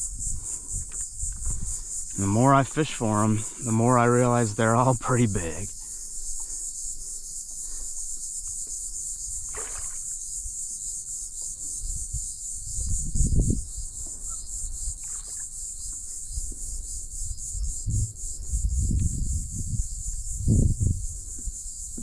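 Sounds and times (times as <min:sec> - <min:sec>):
insect chorus buzzing: 0:00.0 - 0:22.0
splash or rustle: 0:09.4 - 0:10.2.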